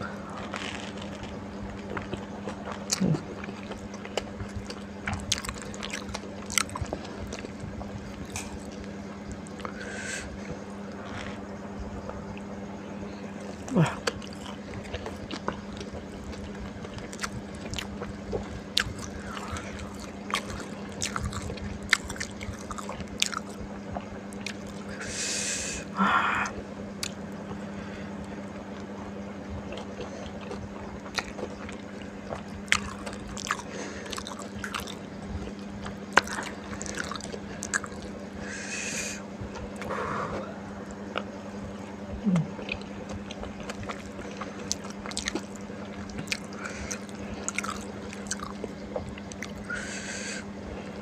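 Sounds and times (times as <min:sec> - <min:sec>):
crunchy chewing: 0:00.0 - 0:51.0
steady low hum: 0:00.0 - 0:51.0.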